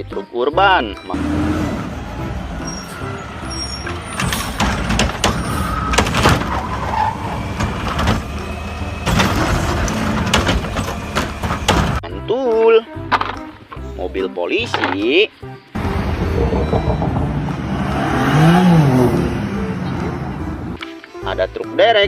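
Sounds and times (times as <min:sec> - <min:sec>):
low engine rumble: 0:01.2 - 0:12.0, 0:15.8 - 0:20.8.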